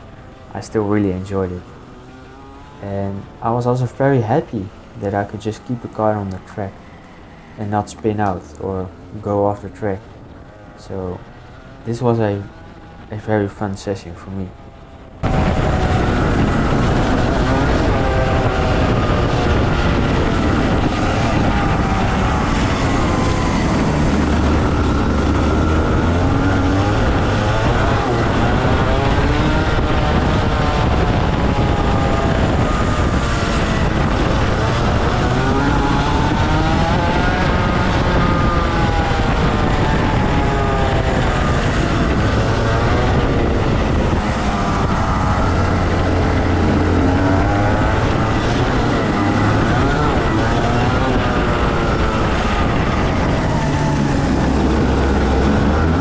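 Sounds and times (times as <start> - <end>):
kart engine revving: 0.0 - 56.0.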